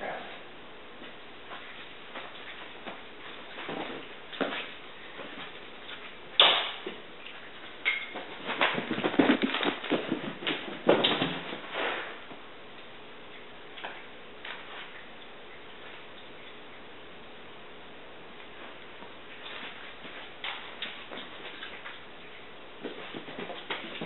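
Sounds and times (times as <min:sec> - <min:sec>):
cat scrabbling on floor: 0:08.0 - 0:12.2, 0:22.8 - 0:24.0.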